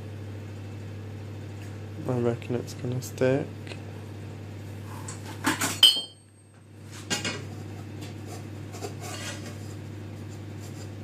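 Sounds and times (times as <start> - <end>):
utensil scraping a pan: 7.4 - 11.0.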